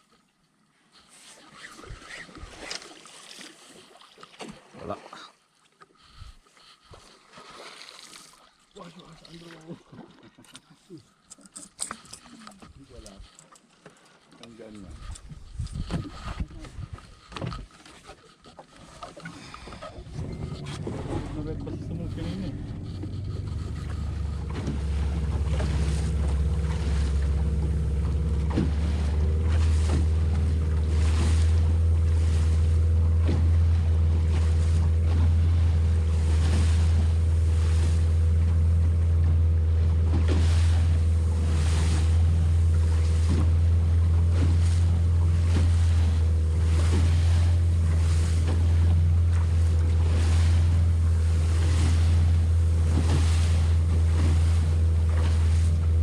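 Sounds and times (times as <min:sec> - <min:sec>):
motorboat engine droning: 0:08.7 - 0:56.0
hull slapping on waves: 0:14.5 - 0:56.0
wind buffeting microphone: 0:15.1 - 0:17.6, 0:19.8 - 0:27.2.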